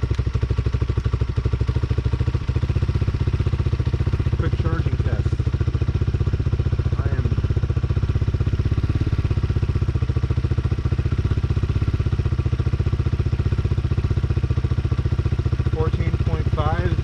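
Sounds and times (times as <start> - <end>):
motorcycle engine idling: 0.0 - 17.0.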